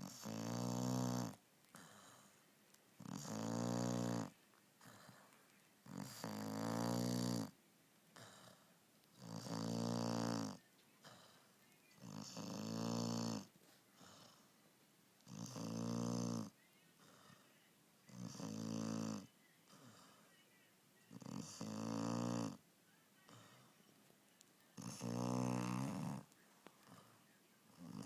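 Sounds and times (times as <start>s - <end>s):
puppy snoring loudly: 0.0s - 2.4s, 3.0s - 7.6s, 8.2s - 14.6s, 15.2s - 17.4s, 18.1s - 20.2s, 21.1s - 22.7s, 24.8s - 28.0s
faint breathing: 1.6s - 2.6s, 4.0s - 6.2s, 8.1s - 8.8s, 11.0s - 12.0s, 13.4s - 14.7s, 16.9s - 17.7s, 19.6s - 20.5s, 23.2s - 24.0s, 24.8s - 28.0s.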